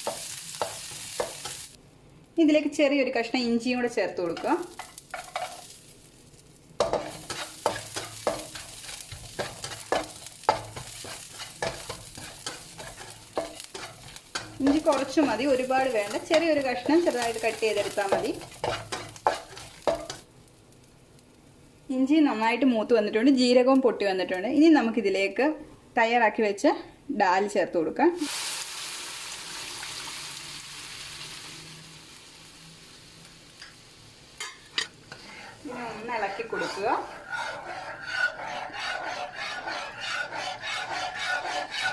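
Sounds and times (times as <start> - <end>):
spoon stirring in pan: 0.0 - 1.6, 4.2 - 5.7, 6.8 - 20.3, 34.4 - 41.9
spices sizzling in hot oil: 0.0 - 1.8, 2.6 - 22.6, 28.1 - 41.9.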